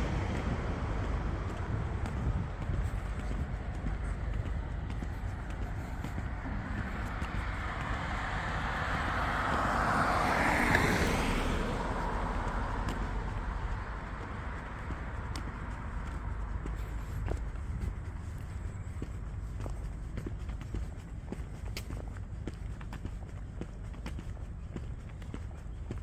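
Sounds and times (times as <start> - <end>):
steady low rumble: 0.0 - 26.0
car driving past: 6.2 - 15.9.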